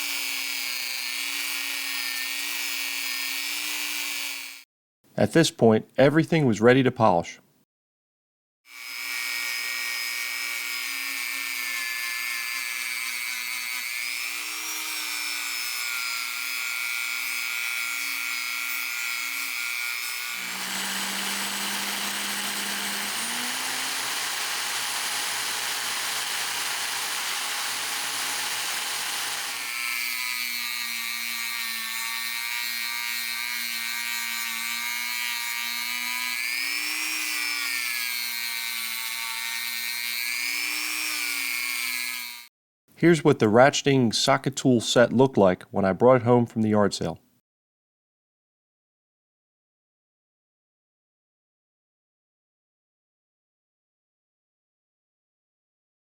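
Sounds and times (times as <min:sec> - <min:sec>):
electric motor whine: 0:20.4 - 0:29.7.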